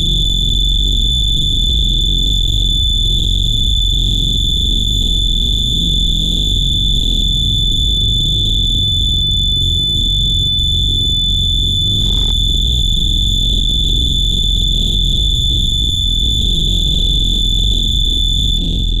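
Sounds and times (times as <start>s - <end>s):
piercing high-pitched electronic tone: 0.0s - 19.0s
dense low rumble: 11.4s - 19.0s.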